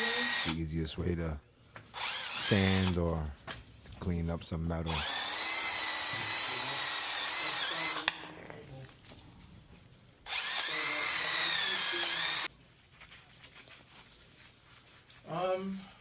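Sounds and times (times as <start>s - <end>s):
power tool whining: 0.0s - 0.6s, 1.9s - 3.0s, 4.9s - 8.4s, 10.2s - 12.5s.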